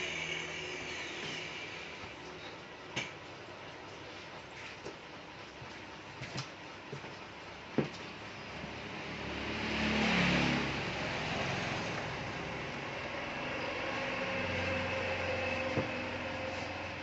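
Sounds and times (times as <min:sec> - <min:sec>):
passing motor vehicle: 0:08.6 - 0:17.0.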